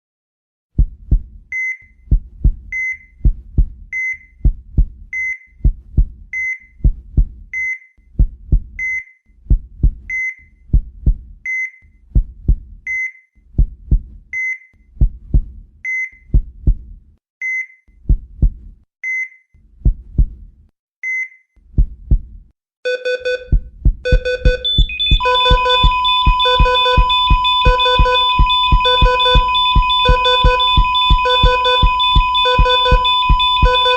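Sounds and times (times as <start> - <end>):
heartbeat: 0.7 - 14.3, 14.9 - 17.1, 18.0 - 18.8, 19.8 - 20.5, 21.7 - 22.5, 23.1 - 33.9
heart monitor beep: 1.5 - 7.9, 8.8 - 9.1, 10.1 - 10.5, 12.9 - 13.2, 22.9 - 33.9
lower repeating alarm beep: 22.9 - 33.9
steady alarm tone: 24.1 - 33.9.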